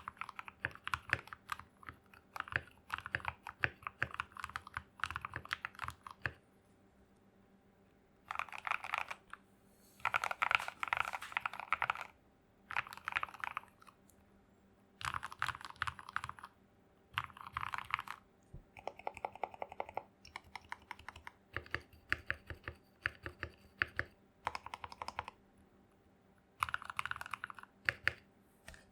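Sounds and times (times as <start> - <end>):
mechanical keyboard typing: 0.0 - 6.4, 8.3 - 9.4, 10.0 - 14.0, 15.0 - 16.5, 17.2 - 18.2, 18.8 - 25.4, 26.6 - 28.2.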